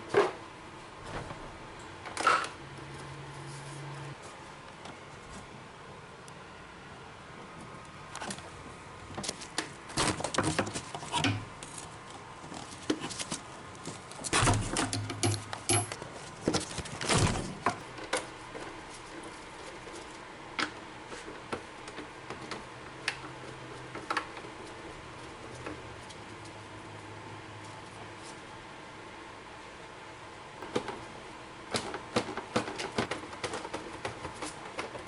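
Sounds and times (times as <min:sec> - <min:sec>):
metal tools clinking: 0:14.9 - 0:16.0.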